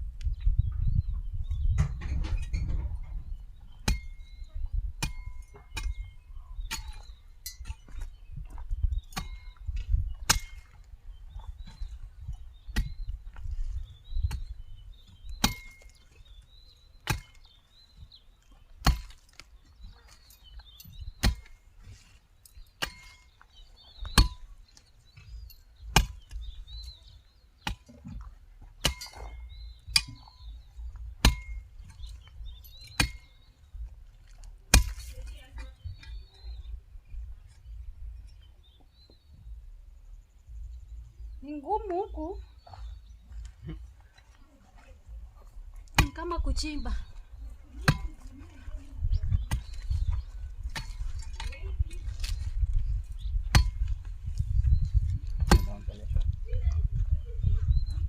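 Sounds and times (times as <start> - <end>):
birds chirping faintly: 0.0 - 58.0
hoe chopping into soil: 18.8 - 19.5, 21.1 - 21.6, 22.8 - 23.4, 25.2 - 27.0, 27.6 - 33.4, 34.7 - 35.2, 47.8 - 48.3, 49.3 - 54.4, 55.2 - 55.9.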